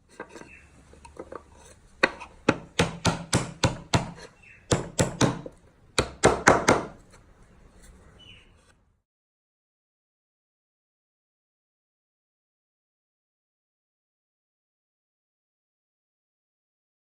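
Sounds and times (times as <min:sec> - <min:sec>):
sharp knocks on timber: 0:02.0 - 0:07.0.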